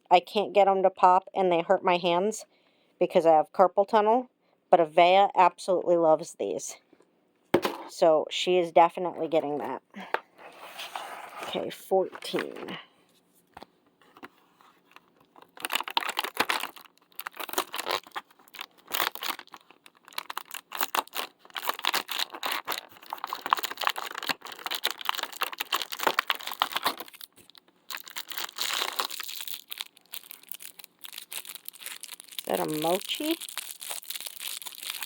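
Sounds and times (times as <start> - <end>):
packaging tearing and crinkling: 14.9 - 35.0.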